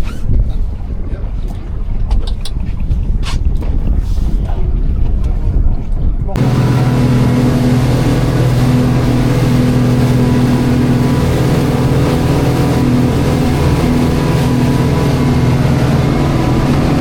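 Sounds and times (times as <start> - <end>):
boat engine droning: 6.4 - 17.0.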